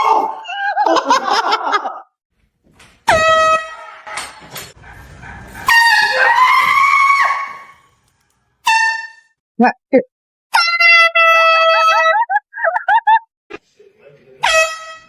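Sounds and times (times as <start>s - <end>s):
air horn blasts: 3.1s - 4.2s, 5.5s - 7.4s, 8.6s - 9.3s, 14.4s - 15.0s.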